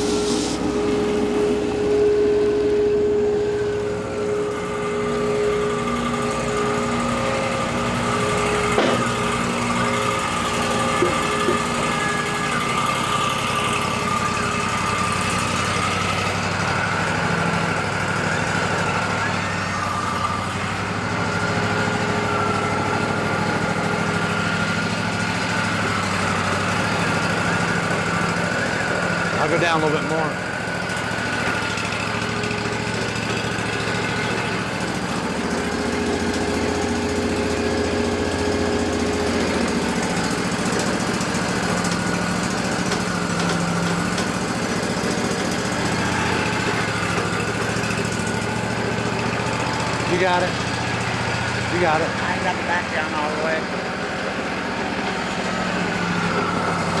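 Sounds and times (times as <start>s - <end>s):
band sawmill whining: 0.0s - 57.0s
short knocks: 8.7s - 9.4s.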